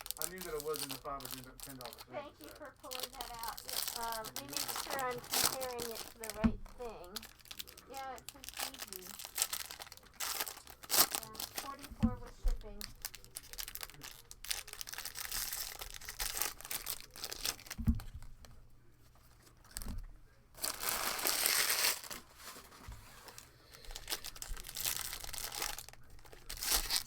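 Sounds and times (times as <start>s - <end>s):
foil wrappers crinkling and tearing: 0.0s - 18.5s, 19.2s - 20.0s, 20.6s - 27.0s
soft thump: 11.8s - 12.7s, 17.8s - 18.4s.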